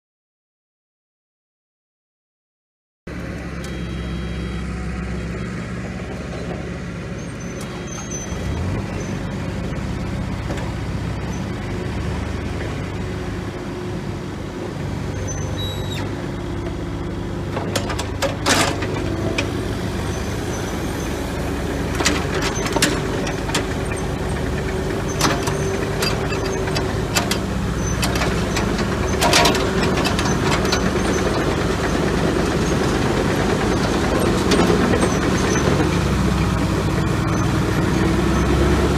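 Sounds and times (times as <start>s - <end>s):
excavator diesel engine running: 3.1s - 38.9s.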